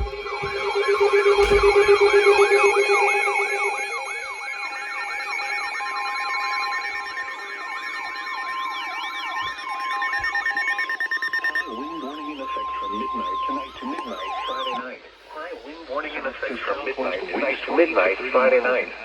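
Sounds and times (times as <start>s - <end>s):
higher siren wail: 0.0s - 14.8s
swooping siren wail: 0.0s - 14.8s
steady alarm tones: 0.0s - 17.6s.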